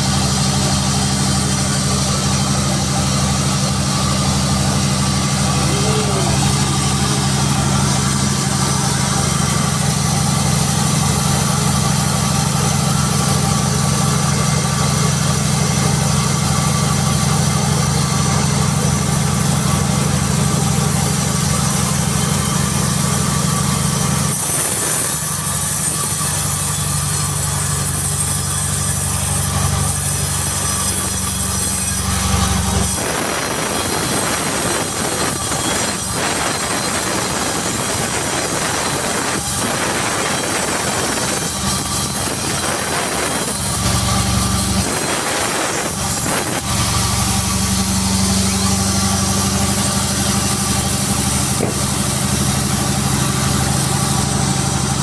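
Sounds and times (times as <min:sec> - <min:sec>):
sawmill machinery hum: 0:00.0 - 0:55.0
high hiss: 0:44.7 - 0:46.7.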